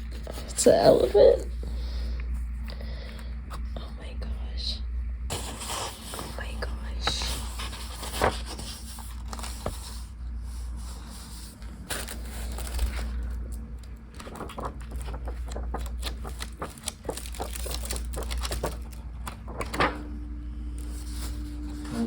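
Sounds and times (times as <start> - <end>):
paper and packaging rustling: 5.3 - 20.1, 20.7 - 22.0.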